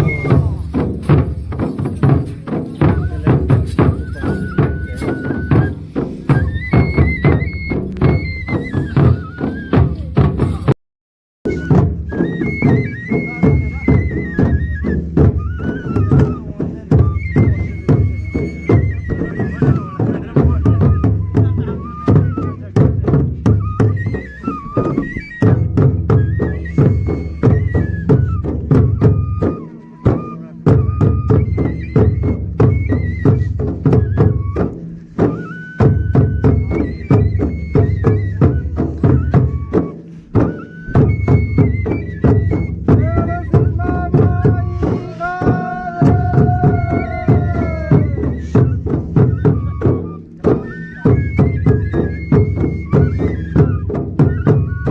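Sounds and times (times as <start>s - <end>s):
steady drum beat: 0.0s - 10.8s, 11.4s - 24.0s, 24.6s - 54.9s.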